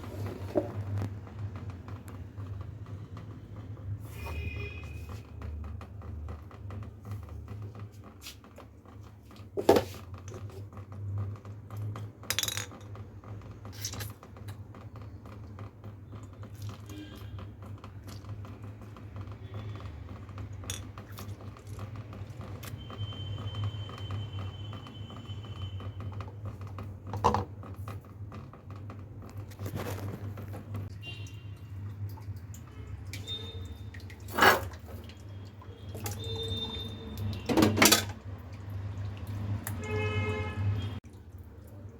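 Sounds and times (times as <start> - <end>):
kitchen utensils clinking: 37.5 - 38.2.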